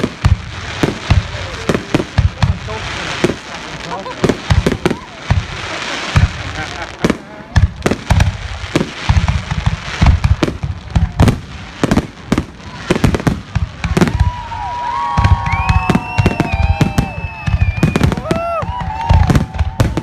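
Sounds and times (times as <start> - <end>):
firework bangs: 0.0 - 20.0
firework whistling: 13.1 - 20.0.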